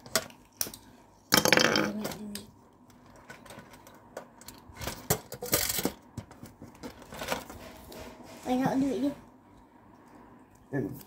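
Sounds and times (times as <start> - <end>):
handling noise: 2.9 - 8.9
plastic toy parts clicking: 3.2 - 6.0.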